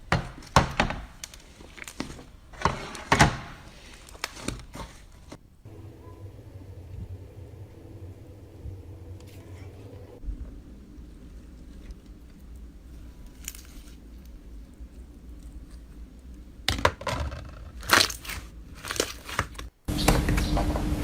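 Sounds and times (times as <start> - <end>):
low hum: 5.6 - 13.4
faint low rumble: 5.6 - 16.7
steady hiss: 5.7 - 14.1.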